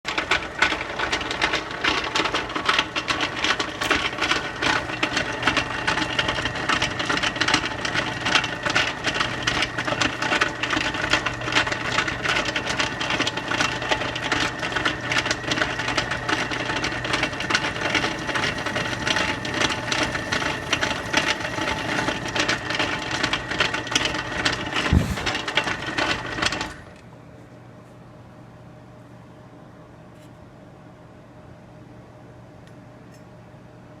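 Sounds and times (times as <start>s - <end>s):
drill press motor hum: 0.1s - 27.0s
fast rattle: 0.4s - 27.0s.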